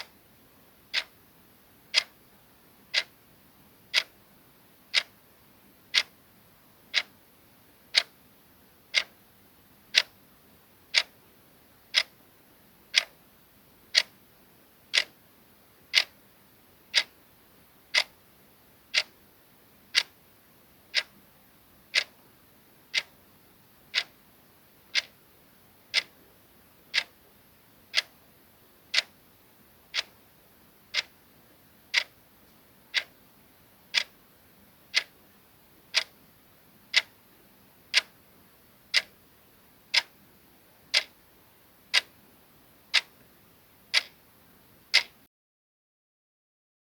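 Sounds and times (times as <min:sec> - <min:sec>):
clock ticking: 0:00.9 - 0:01.2, 0:01.9 - 0:02.2, 0:02.9 - 0:03.1, 0:03.9 - 0:04.2, 0:04.9 - 0:05.1, 0:05.9 - 0:06.1, 0:06.9 - 0:07.1, 0:07.9 - 0:08.1, 0:08.9 - 0:09.1, 0:09.9 - 0:10.1, 0:10.9 - 0:11.2, 0:11.9 - 0:12.1, 0:12.9 - 0:13.2, 0:13.9 - 0:14.1, 0:14.9 - 0:15.2, 0:15.9 - 0:16.2, 0:16.9 - 0:17.1, 0:17.9 - 0:18.2, 0:18.9 - 0:19.1, 0:19.9 - 0:20.2, 0:20.9 - 0:21.1, 0:21.9 - 0:22.2, 0:22.9 - 0:23.1, 0:23.9 - 0:24.1, 0:24.9 - 0:25.2, 0:25.9 - 0:26.1, 0:26.9 - 0:27.1, 0:27.9 - 0:28.1, 0:28.9 - 0:29.2, 0:29.9 - 0:30.2, 0:30.9 - 0:31.2, 0:31.9 - 0:32.2, 0:32.9 - 0:33.2, 0:33.9 - 0:34.2, 0:34.9 - 0:35.2, 0:35.9 - 0:36.2, 0:36.9 - 0:37.2, 0:37.9 - 0:38.1, 0:38.9 - 0:39.1, 0:39.9 - 0:40.1, 0:40.9 - 0:41.2, 0:41.9 - 0:42.1, 0:42.9 - 0:43.2, 0:43.9 - 0:44.2, 0:44.9 - 0:45.2.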